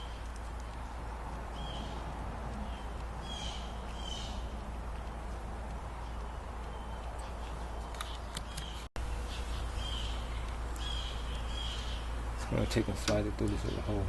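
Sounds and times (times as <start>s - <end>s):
light metallic clicks: 0.0s - 8.9s, 13.0s - 13.8s
low hum and hiss: 0.0s - 14.0s
high bird chirps: 1.5s - 2.0s, 2.6s - 4.6s, 5.9s - 12.2s.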